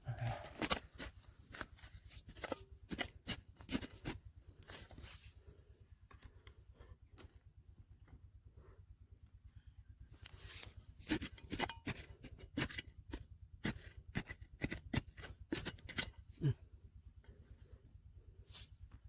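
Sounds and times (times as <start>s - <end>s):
digging through stones and gravel: 0.0s - 5.4s, 10.2s - 16.5s.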